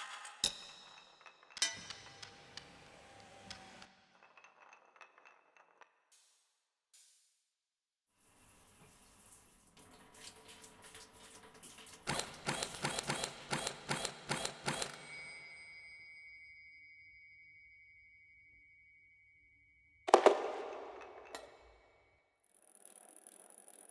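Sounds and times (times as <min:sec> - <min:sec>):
sharp knocks: 0:20.1 - 0:21.8.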